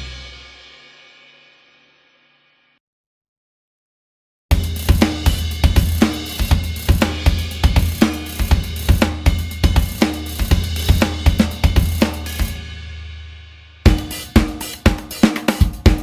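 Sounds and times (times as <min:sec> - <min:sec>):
kick drum: 0:04.5 - 0:12.0, 0:13.9 - 0:16.0
hi-hat: 0:04.6 - 0:12.6, 0:13.9 - 0:16.0.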